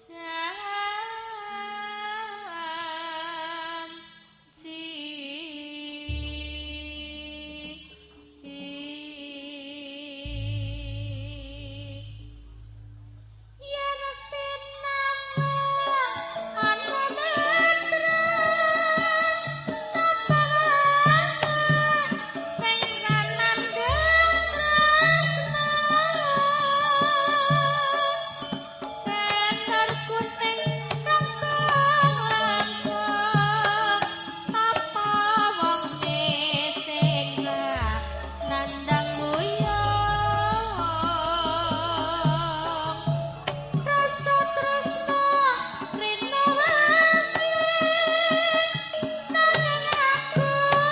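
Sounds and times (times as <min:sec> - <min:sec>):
hand drum strokes: 0:10.2 - 0:50.9
person singing: 0:13.6 - 0:50.9
gamelan ensemble playing: 0:19.4 - 0:33.0, 0:37.3 - 0:45.9.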